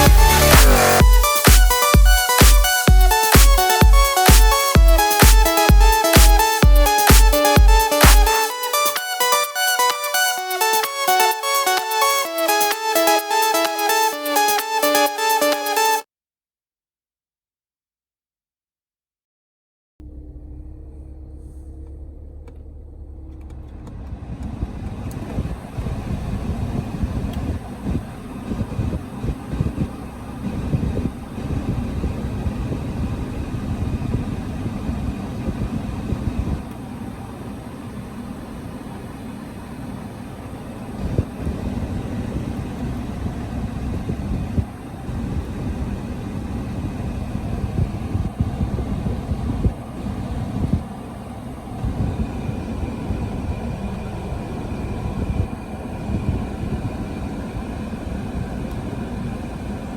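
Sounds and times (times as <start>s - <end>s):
car engine rumbling: 0.0s - 1.3s, 20.0s - 59.9s.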